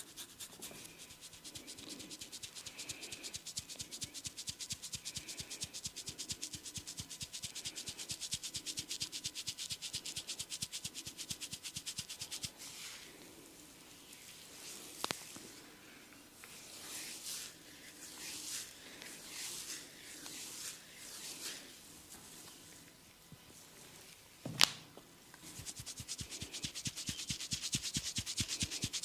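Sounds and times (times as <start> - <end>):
hands rubbing hair and scalp: 0.0 - 13.1, 16.4 - 22.7, 25.4 - 29.0.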